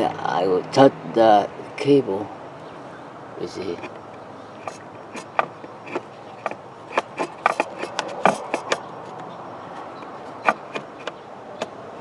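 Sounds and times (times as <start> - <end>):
steady low hiss: 0.0 - 12.0
tools and metal parts clicking: 4.6 - 8.8.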